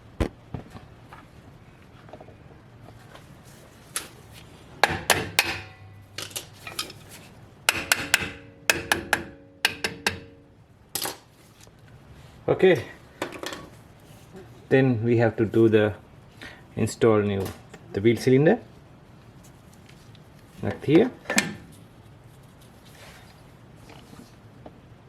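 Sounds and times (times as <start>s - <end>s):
metallic clinks of tools and parts: 5.7s - 7.0s.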